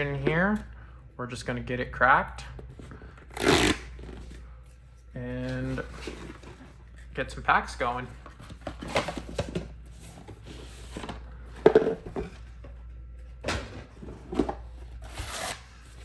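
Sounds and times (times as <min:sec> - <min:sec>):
cardboard box handling: 0:05.6 - 0:06.8.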